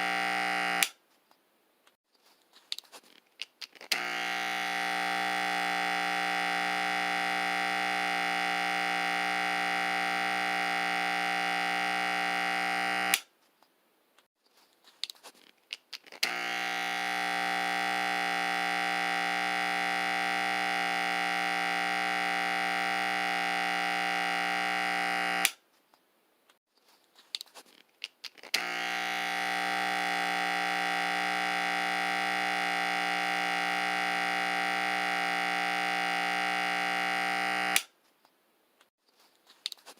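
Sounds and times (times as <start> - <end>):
electric clippers buzzing: 0.0 - 1.0, 3.8 - 13.3, 16.1 - 25.6, 28.4 - 37.9.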